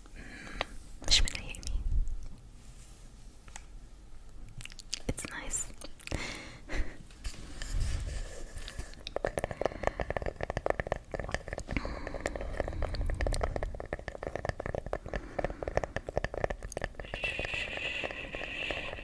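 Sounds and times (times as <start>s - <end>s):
crinkling and crackling clicks: 8.6s - 17.2s.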